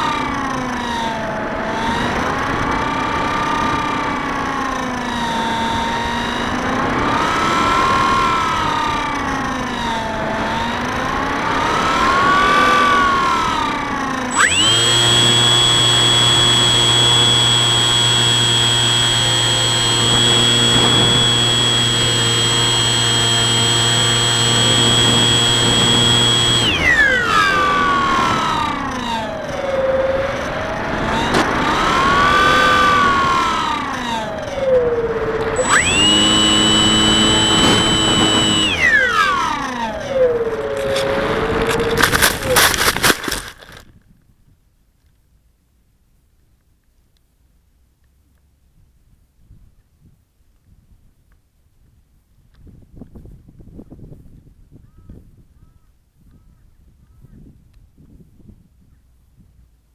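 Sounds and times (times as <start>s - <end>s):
electric model plane motor whining: 0.0s - 43.8s.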